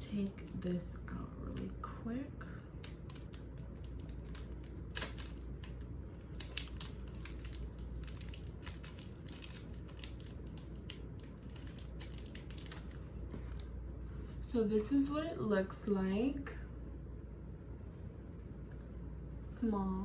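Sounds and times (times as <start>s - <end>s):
packaging crinkling and rustling: 2.8s - 13.7s.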